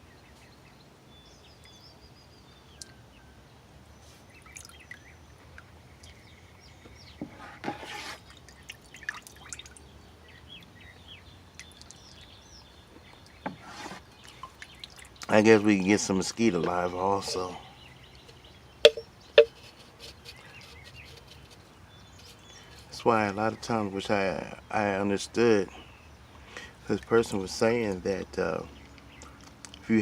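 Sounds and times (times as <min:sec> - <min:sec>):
birds chirping: 0:00.0 - 0:30.0
water dripping and splashing: 0:04.4 - 0:06.2, 0:08.2 - 0:10.7, 0:11.5 - 0:12.4, 0:14.1 - 0:17.5.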